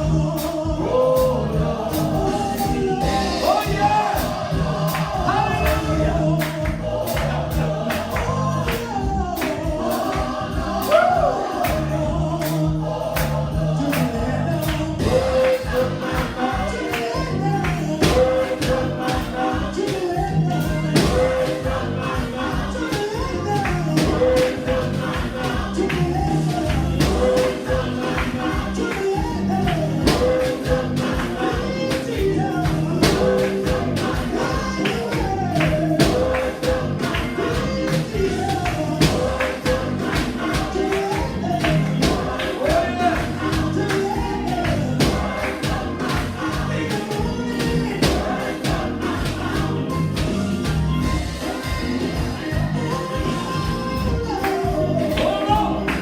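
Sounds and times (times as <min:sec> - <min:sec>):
choir singing gospel: 0:00.0 - 0:56.0
percussion and bass beat: 0:00.0 - 0:56.0.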